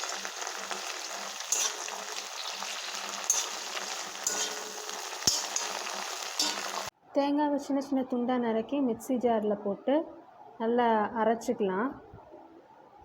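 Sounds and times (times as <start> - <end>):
food sizzling in oil: 0.0 - 6.9
scraping against pan: 0.0 - 6.9.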